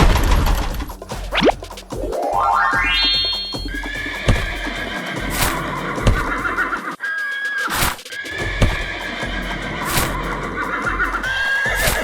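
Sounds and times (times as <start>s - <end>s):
horse whinnying: 3.0s - 7.2s, 8.3s - 12.0s
sharp knocks: 4.3s - 6.5s, 7.8s - 9.0s.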